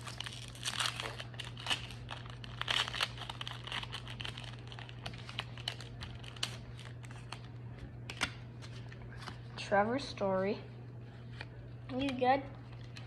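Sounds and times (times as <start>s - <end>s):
card pack wrapper crinkling: 0.0s - 7.5s
steady low hum: 0.0s - 13.0s.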